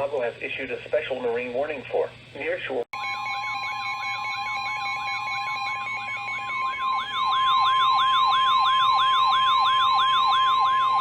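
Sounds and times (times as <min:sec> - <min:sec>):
steady warning tone: 0:03.0 - 0:11.0
rising siren sweep: 0:03.8 - 0:11.0.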